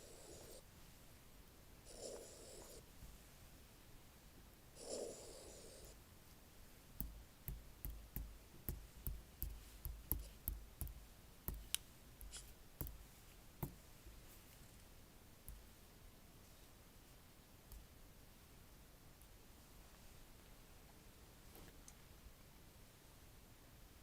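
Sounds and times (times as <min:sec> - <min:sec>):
fingertips tapping on tablet: 0:07.0 - 0:13.0.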